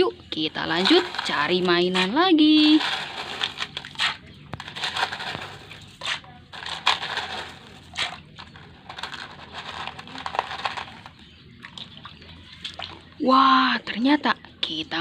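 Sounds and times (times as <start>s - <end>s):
hands digging through gravel: 0.6s - 11.1s.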